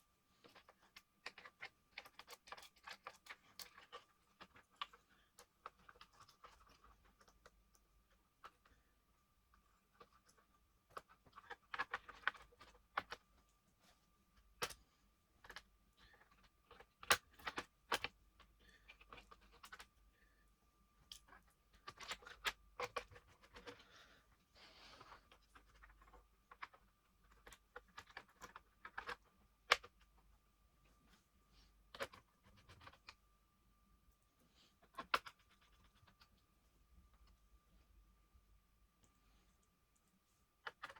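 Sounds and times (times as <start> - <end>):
plastic and metal parts clicking: 25.0 - 30.1, 40.6 - 40.9.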